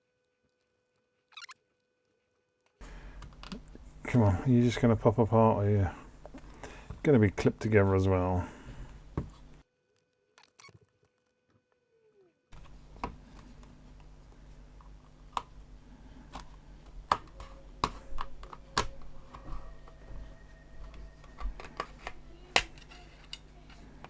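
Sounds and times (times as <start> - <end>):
low steady hum: 2.8 - 9.6, 12.5 - 24.0.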